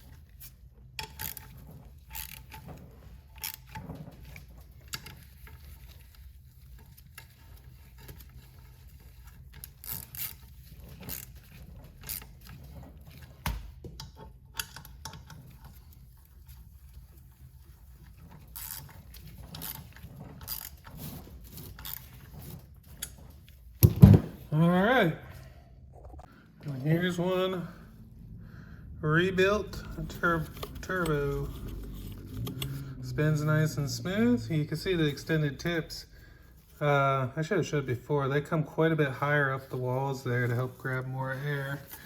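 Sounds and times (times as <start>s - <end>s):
low steady hum: 14.5s - 42.0s.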